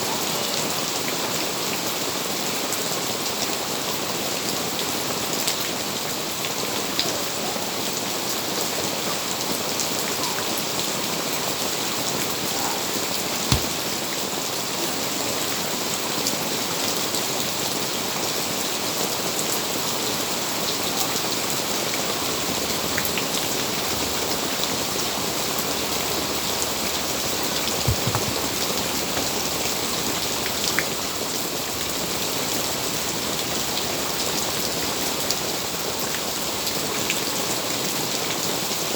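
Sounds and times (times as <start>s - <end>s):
steady rain falling: 0.0s - 14.2s, 16.0s - 38.9s
drip taps: 13.5s - 13.9s.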